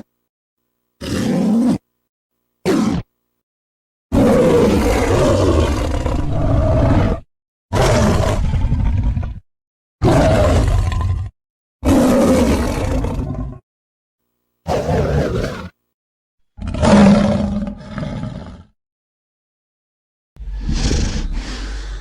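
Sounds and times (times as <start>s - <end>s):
giant ape roaring: 4.1s - 9.4s, 10.0s - 13.6s, 14.7s - 15.7s, 16.6s - 18.7s, 20.4s - 22.0s.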